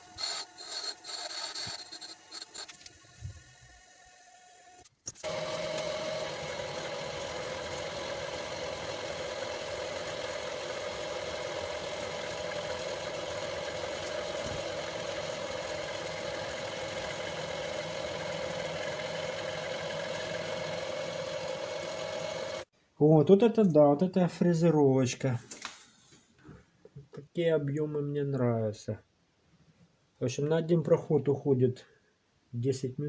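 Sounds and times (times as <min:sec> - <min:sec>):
milling machine whining: 0:00.0 - 0:22.7.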